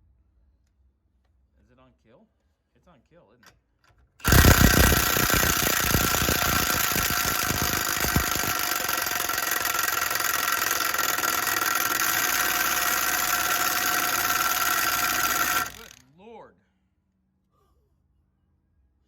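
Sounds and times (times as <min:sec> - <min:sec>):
impact wrench hammering: 0:04.2 - 0:16.0.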